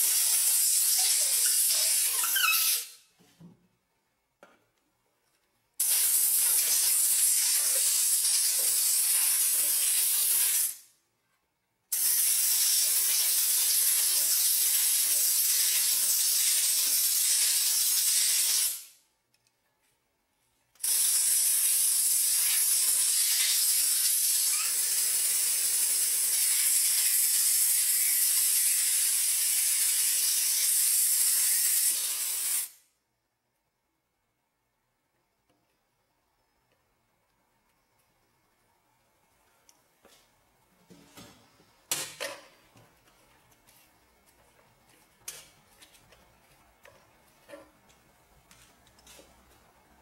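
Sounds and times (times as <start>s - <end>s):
compressed air hissing: 0.0s - 3.0s, 5.8s - 10.8s, 20.8s - 32.8s.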